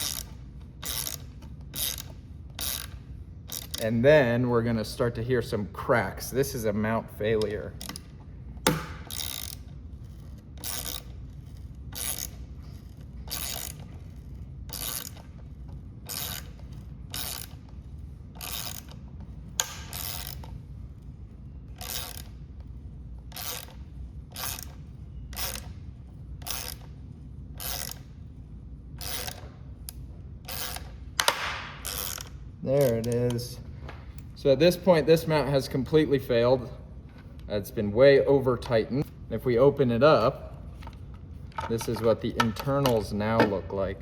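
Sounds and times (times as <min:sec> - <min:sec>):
wrench cranking bolt rasping: 0:00.0 - 0:04.4, 0:07.2 - 0:20.6, 0:21.7 - 0:25.8, 0:26.4 - 0:28.2, 0:29.0 - 0:33.5, 0:39.7 - 0:43.6.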